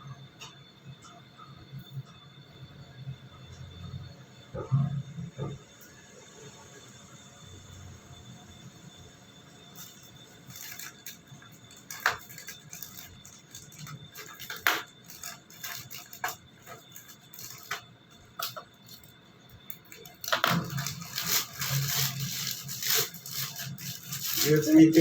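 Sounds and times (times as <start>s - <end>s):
containers and utensils clattering: 18.4s - 19.1s, 19.7s - 25.0s.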